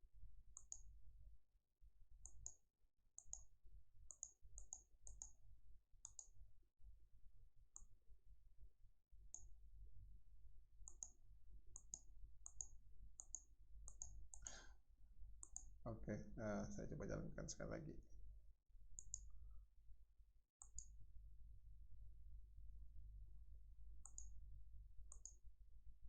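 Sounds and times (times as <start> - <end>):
computer mouse clicking: 0.6 - 0.9, 3.2 - 3.5, 4.1 - 5.4, 6.0 - 6.4, 10.8 - 11.2, 11.8 - 14.6, 15.4 - 15.8, 19.0 - 19.3, 20.6 - 20.9, 24.0 - 24.3, 25.1 - 25.4
low electrical hum: 15.2 - 18.2.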